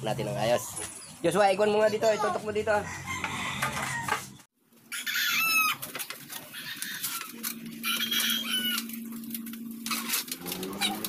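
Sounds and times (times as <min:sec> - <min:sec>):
chickens clucking: 0:01.8 - 0:09.1
steady low hum: 0:06.2 - 0:11.0.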